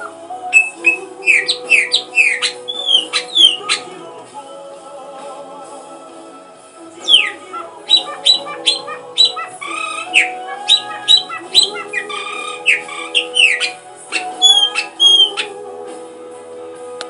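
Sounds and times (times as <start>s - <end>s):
bird-like squawks and chirps: 0.0s - 3.9s, 7.0s - 15.6s
held musical tones: 0.0s - 4.7s, 6.5s - 15.8s.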